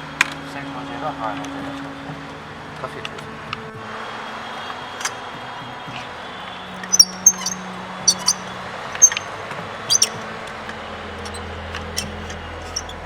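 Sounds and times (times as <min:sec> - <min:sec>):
ratchet metal clicks: 0:06.9 - 0:08.4, 0:09.0 - 0:09.3, 0:09.9 - 0:10.2.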